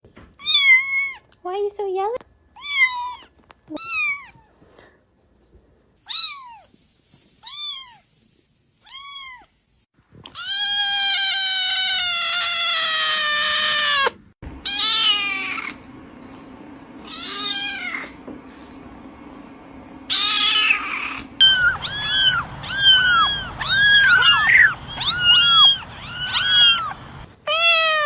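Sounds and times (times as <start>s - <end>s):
kittens meowing: 20.1s - 28.0s.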